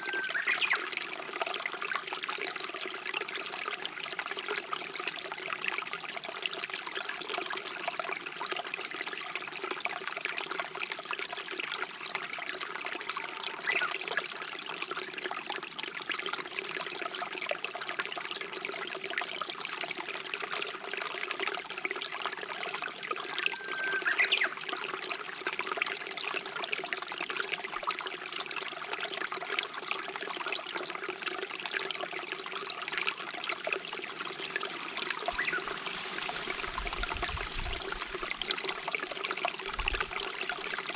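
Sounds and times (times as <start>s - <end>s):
bird call: 0.0s - 0.9s, 23.4s - 24.5s, 35.3s - 36.3s
stream water trickling: 0.0s - 40.9s.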